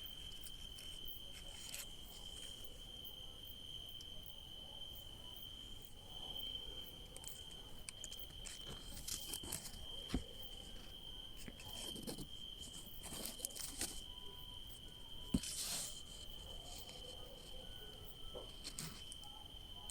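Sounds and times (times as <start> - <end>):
crickets trilling: 0.0 - 19.9
rustling: 0.1 - 2.8, 8.1 - 14.2, 15.3 - 17.6.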